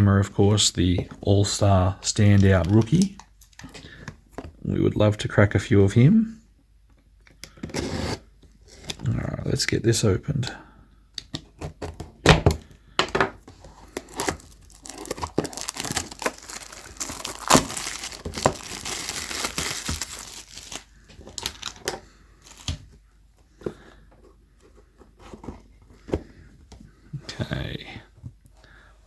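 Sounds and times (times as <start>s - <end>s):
plastic wrap tearing and crumpling: 13.8s - 22.8s.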